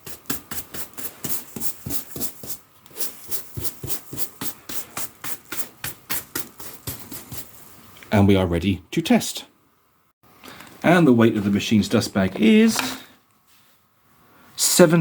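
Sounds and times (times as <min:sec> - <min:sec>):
brush scrubbing carpet: 0:00.0 - 0:07.7.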